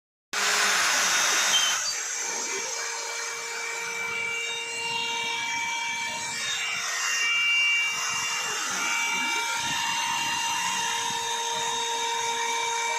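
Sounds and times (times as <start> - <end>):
router spindle whine: 0.4 - 12.9
bit cutting acrylic hiss: 0.6 - 3.4.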